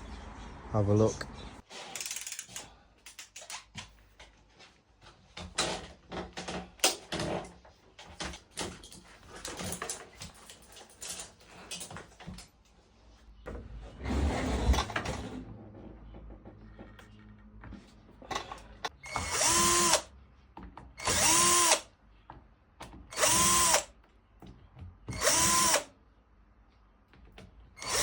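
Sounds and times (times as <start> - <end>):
tools and metal parts clattering: 1.8 - 4.3, 5.3 - 12.6, 14.7 - 19.0.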